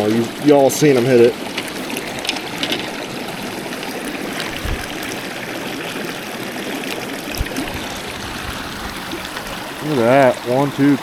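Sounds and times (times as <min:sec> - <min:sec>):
stream babbling over rocks: 0:00.0 - 0:11.0
dull bumps: 0:01.6 - 0:06.3.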